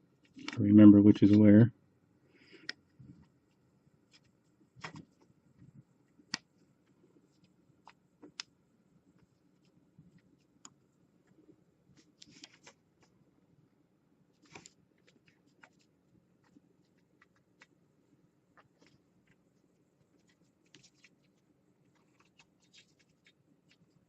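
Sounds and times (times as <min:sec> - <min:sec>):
wire connectors clicking and scraping: 0:00.2 - 0:00.6.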